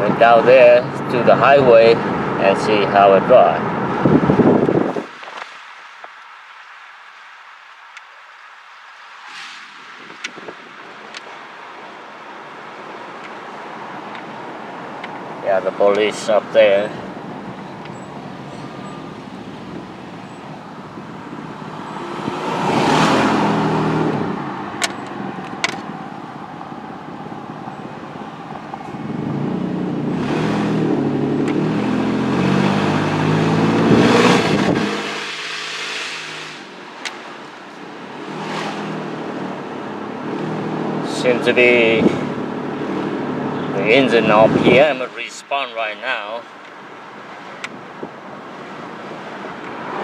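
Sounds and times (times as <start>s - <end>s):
truck engine revving: 15.6s - 36.6s.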